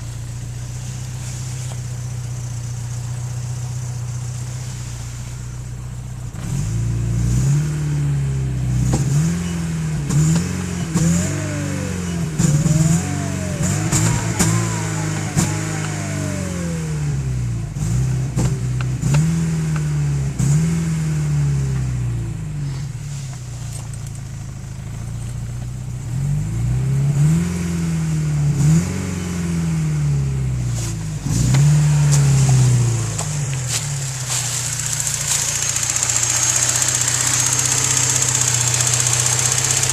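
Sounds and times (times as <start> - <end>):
turbocharger whine: 0.0 - 23.0, 31.2 - 39.9
car engine revving: 0.0 - 39.9.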